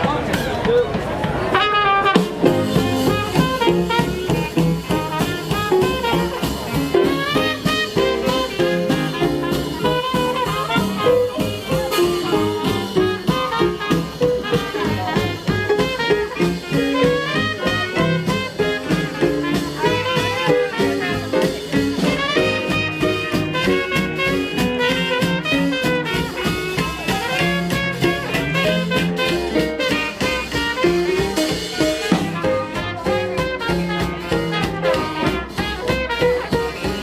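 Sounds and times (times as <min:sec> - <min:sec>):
jazz band playing swing tune: 0:00.0 - 0:37.0
trumpet: 0:01.4 - 0:37.0.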